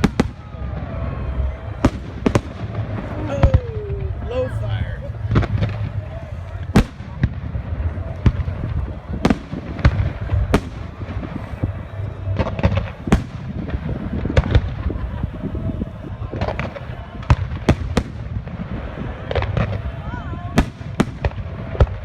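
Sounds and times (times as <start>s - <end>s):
fireworks bangs: 0.0s - 22.0s
fireworks crackling: 0.0s - 22.0s
low rumble: 0.0s - 22.0s.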